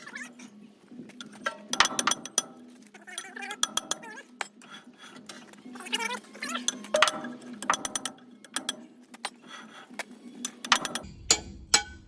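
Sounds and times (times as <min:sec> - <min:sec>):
metal tools clinking and clanking: 0:01.0 - 0:11.1.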